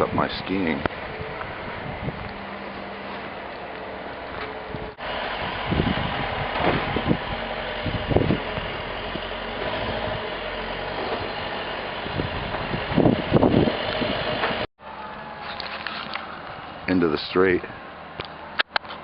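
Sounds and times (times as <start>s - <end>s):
truck engine running: 0.9s - 15.4s.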